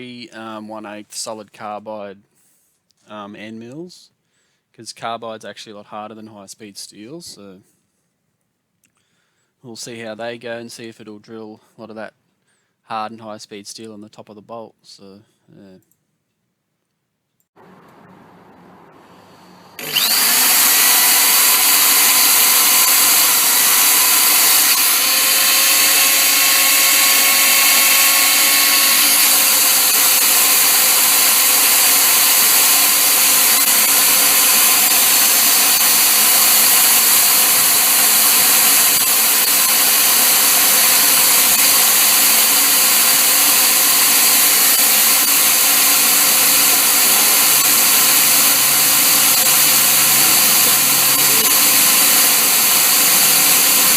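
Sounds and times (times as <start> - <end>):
power drill cutting into steel: 19.4 - 53.9.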